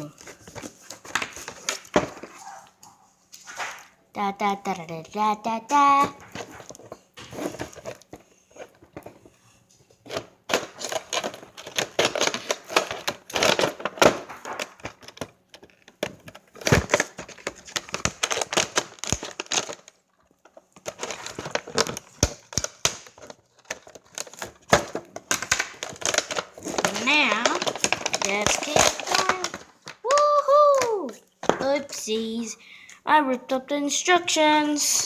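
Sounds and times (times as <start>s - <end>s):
packaging crinkling and tearing: 0.0s - 3.9s, 10.0s - 32.4s.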